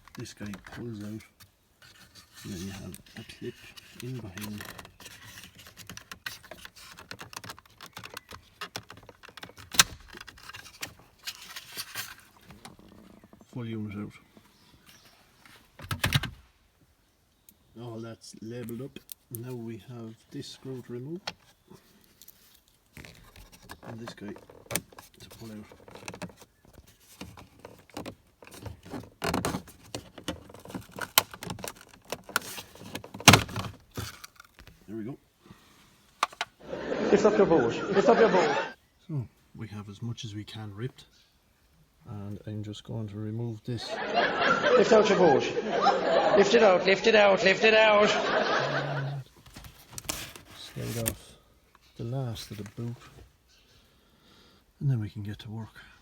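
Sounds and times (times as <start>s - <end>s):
plastic trim clicks and rattles: 3.8s - 11.0s, 27.2s - 34.7s
plastic trim clicking and tapping: 4.0s - 10.4s.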